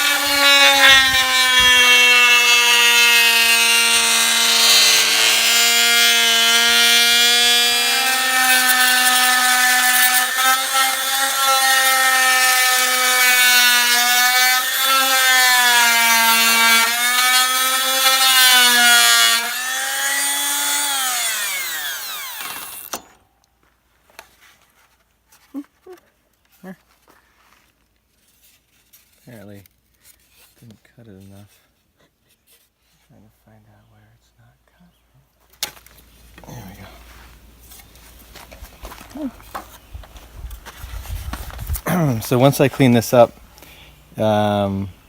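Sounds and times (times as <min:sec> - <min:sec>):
electric power saw running: 0:00.0 - 0:23.2
saw motor winding down whine: 0:13.9 - 0:23.2.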